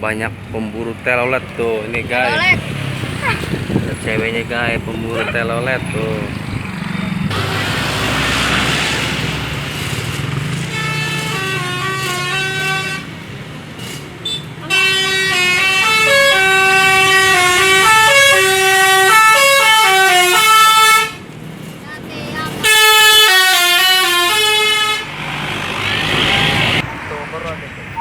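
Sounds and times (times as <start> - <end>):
bus engine passing: 0.0 - 28.0
multi-tone air horn tune: 10.6 - 13.2, 14.2 - 21.2, 22.6 - 25.1.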